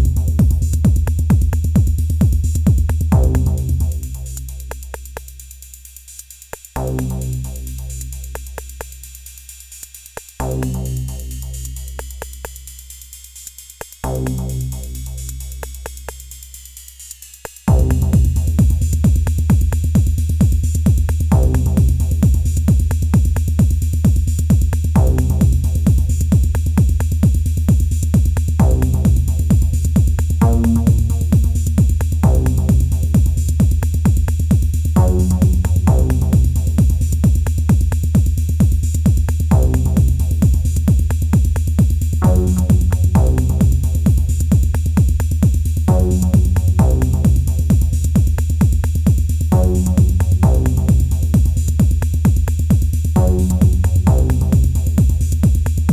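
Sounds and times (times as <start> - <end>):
long bass hits: 0.0 - 4.0, 17.7 - 19.2, 30.4 - 31.6, 35.0 - 37.2, 42.2 - 44.2
techno kick drum beat: 0.0 - 55.9
ticking hi-hats: 0.0 - 55.9.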